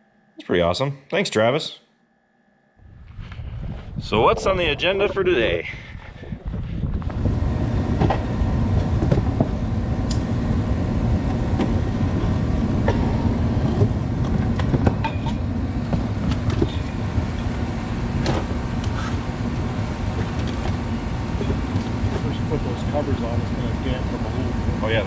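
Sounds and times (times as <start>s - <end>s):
vehicle engine rumble: 2.8s - 25.0s
rattles and clicks: 11.2s - 25.0s.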